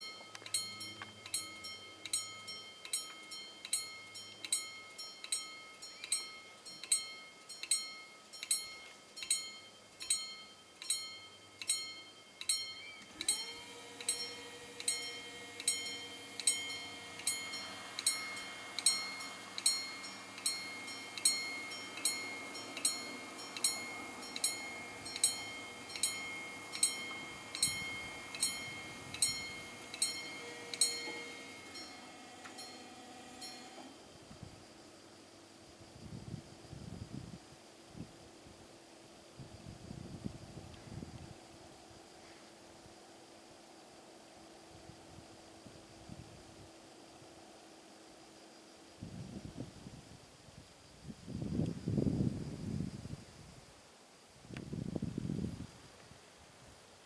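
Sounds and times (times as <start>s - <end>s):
level crossing warning bell: 0.0s - 34.0s
steady hum: 12.5s - 35.2s.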